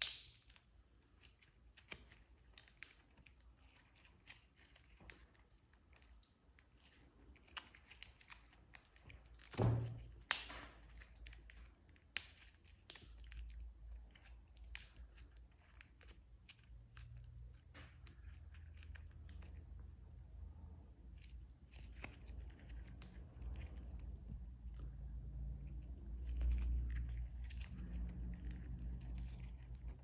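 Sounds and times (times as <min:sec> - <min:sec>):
slime wet clicks and pops: 0:00.0 - 0:00.6
slime squelch: 0:00.0 - 0:30.0.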